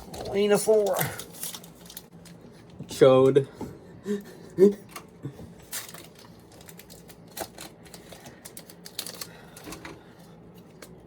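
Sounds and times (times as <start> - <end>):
cards and foil pack crinkling: 0.0 - 3.4, 5.6 - 11.0.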